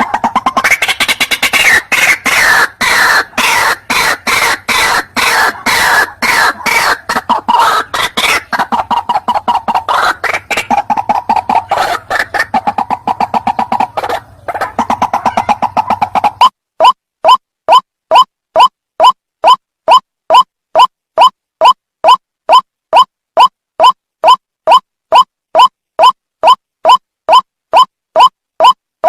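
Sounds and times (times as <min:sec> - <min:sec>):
waterhen calling rapidly: 0:00.0 - 0:18.7.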